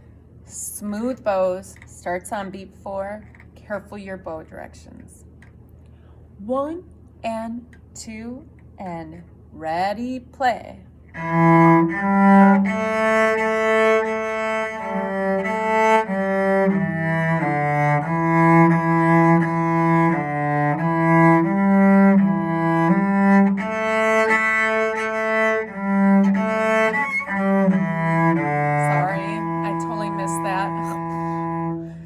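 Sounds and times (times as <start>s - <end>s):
cello playing slow melody: 11.2s - 32.0s.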